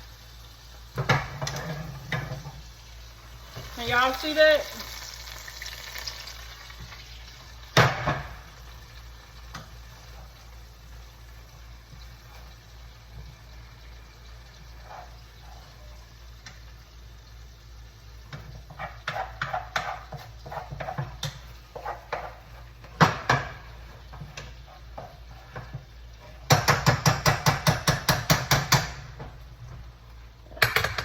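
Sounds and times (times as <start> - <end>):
utensil knocking and scraping in pan: 0.9 - 2.7, 7.7 - 8.7, 9.4 - 10.6, 11.8 - 16.8, 18.2 - 29.9, 30.5 - 31.0.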